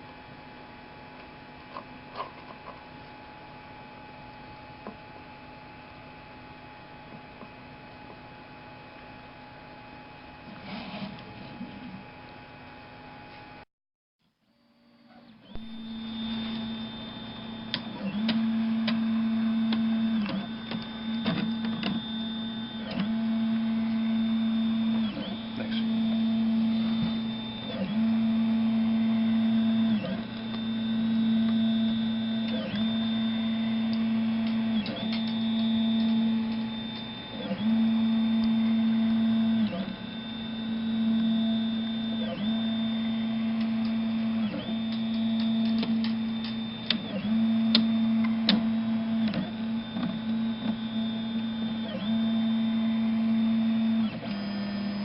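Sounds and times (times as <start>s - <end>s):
stepper motor whine: 14.5s - 55.0s.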